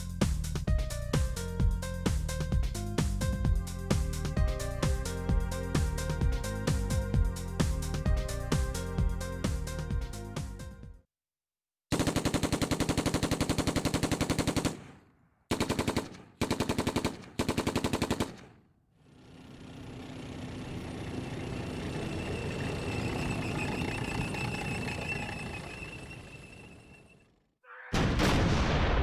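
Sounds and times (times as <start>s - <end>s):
machine-gun fire bursts: 11.9s - 18.6s.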